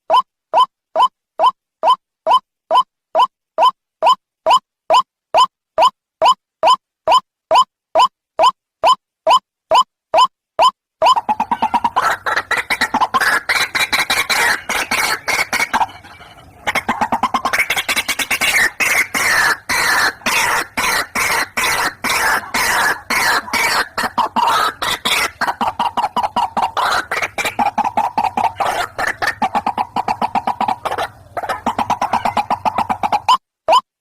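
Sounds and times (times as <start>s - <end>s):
bird calling harsh notes: 10.6s - 33.4s.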